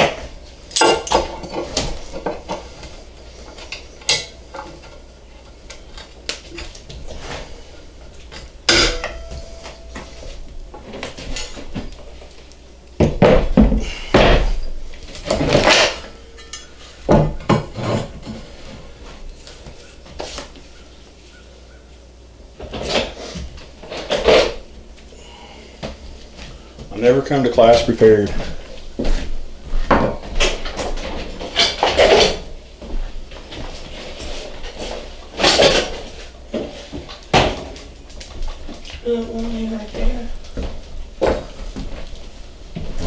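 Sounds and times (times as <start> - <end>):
sharp knocks: 8.7 - 10.4
metal tools clinking: 8.7 - 11.6, 15.4 - 17.0.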